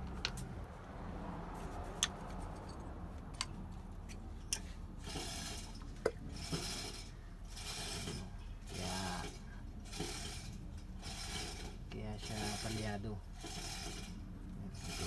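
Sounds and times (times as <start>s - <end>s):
rasping rubbing strokes: 5.0s - 15.0s.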